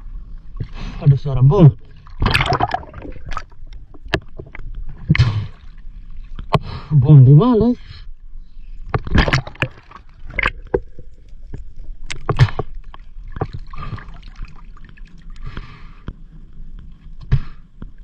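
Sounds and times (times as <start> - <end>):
sharp underwater cracks and knocks: 2.2 - 5.6, 8.9 - 14.1.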